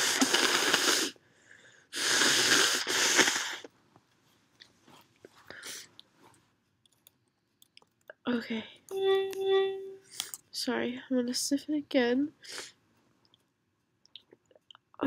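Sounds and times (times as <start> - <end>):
faint sniffles: 1.9 - 3.7, 5.4 - 6.0.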